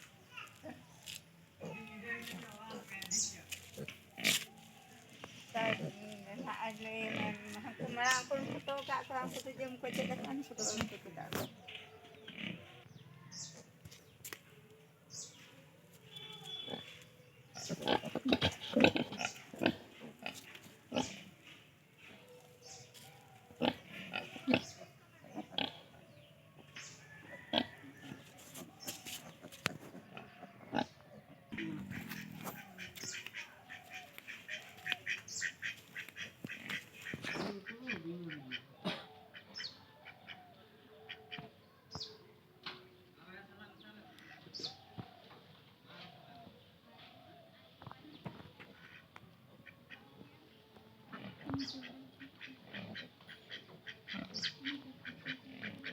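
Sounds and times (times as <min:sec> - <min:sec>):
farm animals calling: 0:00.0 - 0:13.7, 0:16.0 - 0:41.6, 0:51.0 - 0:55.9
pigs grunting: 0:05.6 - 0:10.5, 0:12.2 - 0:12.9, 0:17.6 - 0:21.4, 0:23.5 - 0:26.2, 0:29.4 - 0:35.7, 0:51.1 - 0:55.9.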